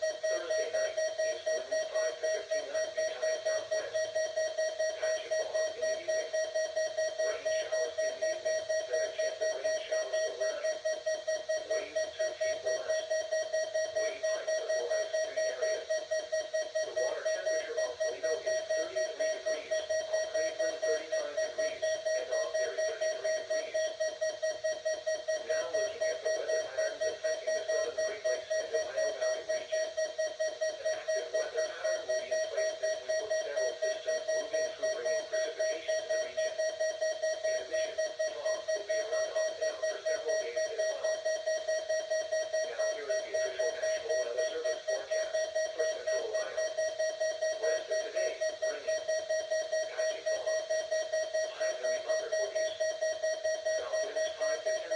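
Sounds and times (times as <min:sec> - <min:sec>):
weather radio alarm beeping: 0:00.0 - 0:54.9.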